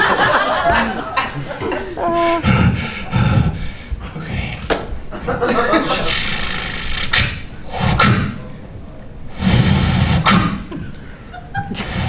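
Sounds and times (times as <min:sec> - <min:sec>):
mouth sound effects: 0:00.8 - 0:04.7, 0:05.8 - 0:08.5, 0:09.3 - 0:12.0.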